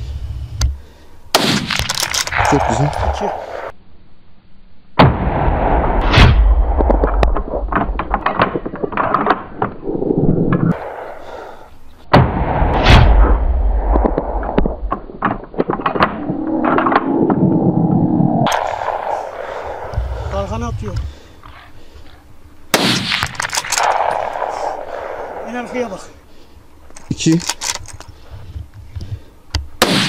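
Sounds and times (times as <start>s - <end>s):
wind rumble on microphone: 0.0s - 0.8s, 16.0s - 21.2s
rifle shots: 1.3s - 3.7s, 10.7s - 14.9s, 18.5s - 20.2s, 22.7s - 26.2s, 29.8s - 30.0s
clicks and rattles: 26.9s - 29.1s.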